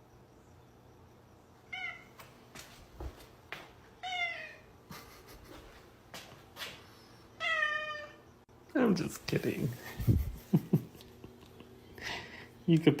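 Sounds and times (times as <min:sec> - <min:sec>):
cat meowing: 0:01.7 - 0:02.1, 0:04.0 - 0:04.7, 0:07.4 - 0:08.2.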